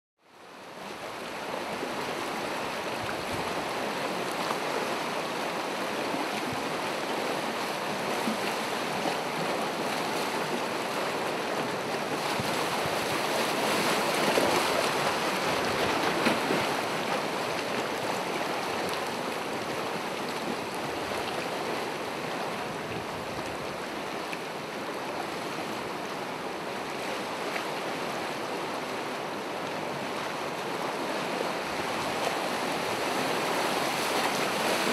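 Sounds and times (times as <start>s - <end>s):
ocean waves washing on shore: 0.3s - 34.9s
wind on microphone: 22.6s - 23.8s.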